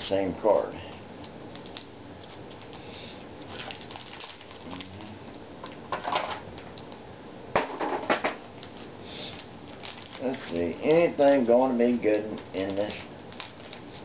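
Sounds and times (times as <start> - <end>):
cards clicking and rustling: 12.1 - 14.0.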